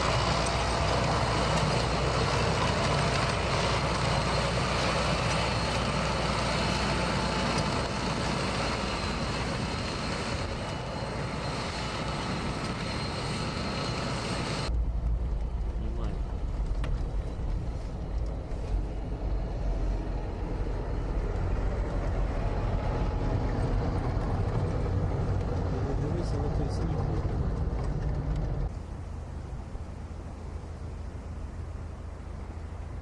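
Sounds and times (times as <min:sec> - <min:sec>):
constant rushing hiss: 0:00.0 - 0:24.3
heavy vehicle engine rumble: 0:00.0 - 0:33.0.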